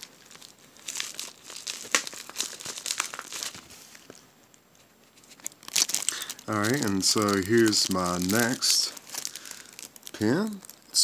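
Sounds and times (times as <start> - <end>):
package wrapping crinkling: 0.0 - 11.0.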